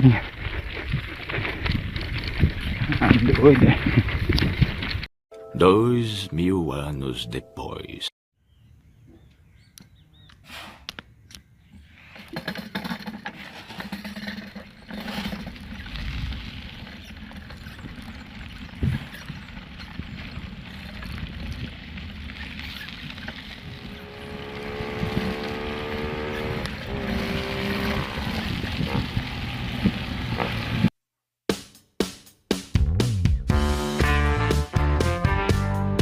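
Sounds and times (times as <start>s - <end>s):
bicycle rolling over dirt track: 0.0s - 5.1s, 12.0s - 30.9s.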